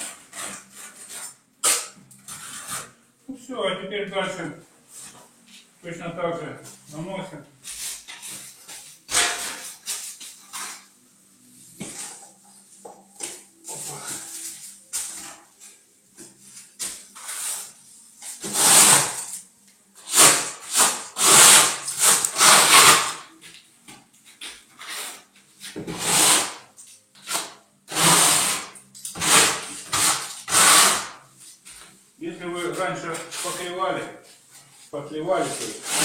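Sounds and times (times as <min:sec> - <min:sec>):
steel trowel scraping plaster: 0:00.0 - 0:03.0, 0:07.7 - 0:11.0, 0:17.2 - 0:19.4, 0:20.0 - 0:23.3, 0:25.9 - 0:31.2, 0:33.1 - 0:33.8, 0:35.3 - 0:36.0.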